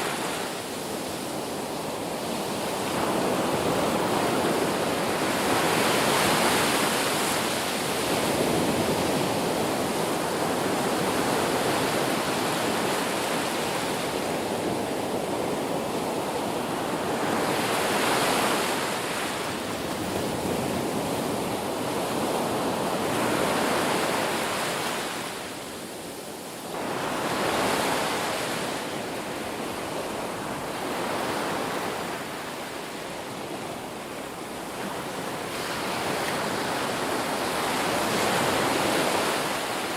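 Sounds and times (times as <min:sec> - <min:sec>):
ocean waves breaking on beach: 0:00.0 - 0:39.9.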